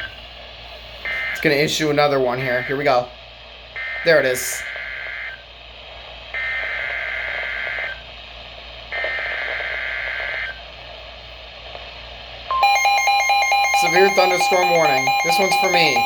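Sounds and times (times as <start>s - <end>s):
long steady alert tone: 12.5s - 16.0s.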